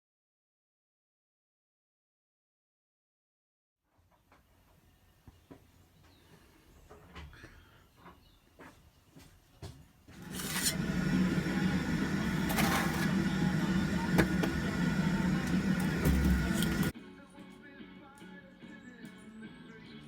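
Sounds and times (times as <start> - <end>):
machine motor humming: 10.2 - 16.9.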